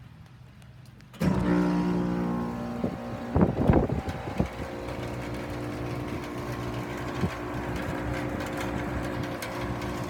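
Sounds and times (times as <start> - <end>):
heat pump compressor and fan hum: 1.2 - 10.0.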